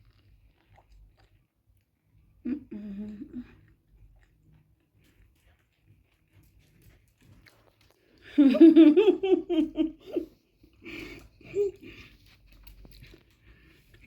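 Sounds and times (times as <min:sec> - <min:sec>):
faint chewing: 0:00.0 - 0:08.5, 0:10.2 - 0:14.0
person laughing: 0:08.3 - 0:10.3.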